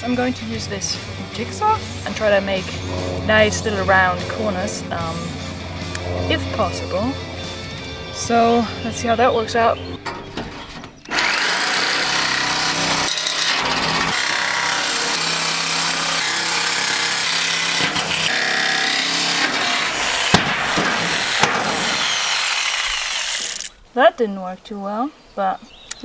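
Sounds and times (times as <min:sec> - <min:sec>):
jigsaw cutting sheet metal: 0:00.0 - 0:23.8
sharp knocks: 0:17.8 - 0:22.1.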